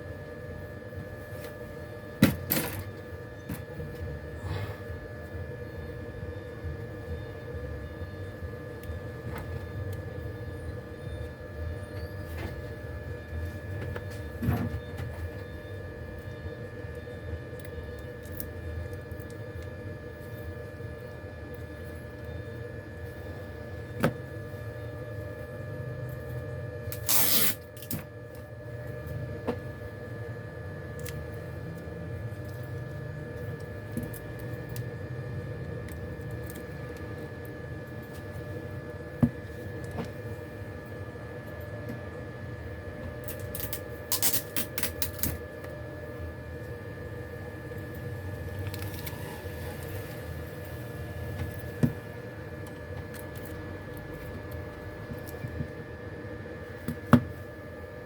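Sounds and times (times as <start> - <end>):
steady electrical hum: 0.0 - 58.0.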